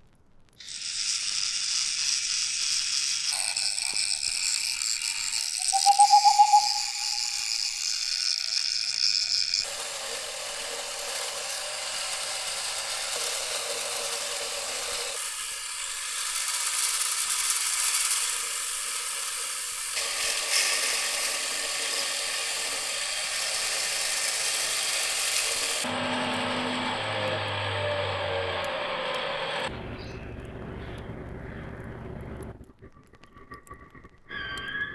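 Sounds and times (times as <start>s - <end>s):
abrasive grinding on steel: 0.6s - 15.6s.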